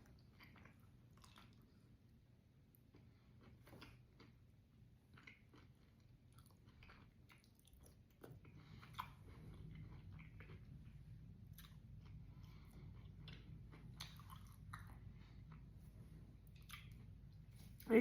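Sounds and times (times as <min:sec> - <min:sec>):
close-up chewing crunches: 0:00.0 - 0:01.8, 0:05.1 - 0:15.7.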